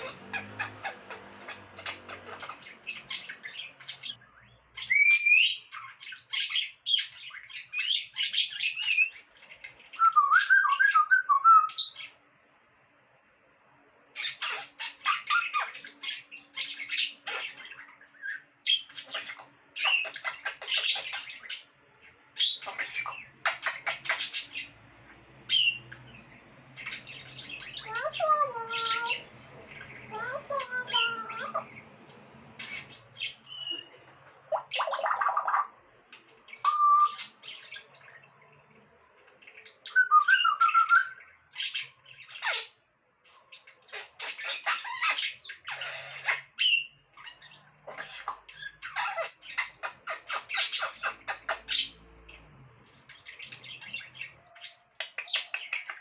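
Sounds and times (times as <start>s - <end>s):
parrot warbling calls: 0.0s - 4.2s, 22.4s - 24.8s, 25.4s - 35.8s, 36.5s - 37.8s, 43.6s - 52.0s
parrot squawking and chirping: 0.0s - 12.2s, 14.1s - 38.5s, 39.4s - 56.0s.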